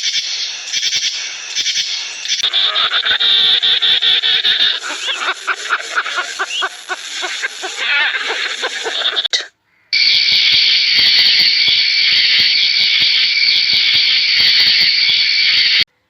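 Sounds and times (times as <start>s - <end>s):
steady high hissing: 0.0s - 15.9s
short pitched animal calls: 0.9s - 15.8s.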